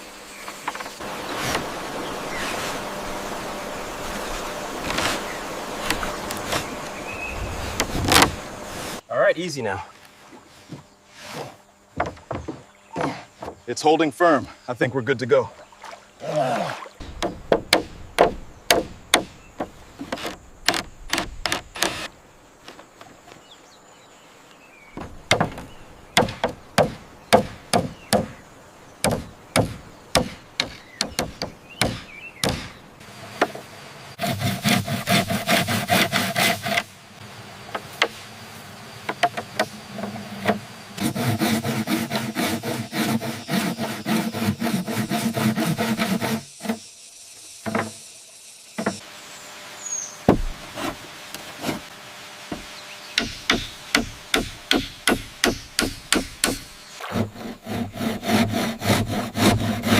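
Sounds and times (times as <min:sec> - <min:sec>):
rubbing strokes on bamboo: 0:00.0 - 0:09.1, 0:09.9 - 0:14.7, 0:16.6 - 0:23.4, 0:29.0 - 0:59.9
wooden knocks on bamboo: 0:11.9 - 0:13.7, 0:17.0 - 0:22.1, 0:25.0 - 0:28.4, 0:29.0 - 0:32.8, 0:37.7 - 0:38.2, 0:39.0 - 0:40.6, 0:47.6 - 0:48.0, 0:48.8 - 0:49.0, 0:50.3 - 0:51.9, 0:52.5 - 0:57.3.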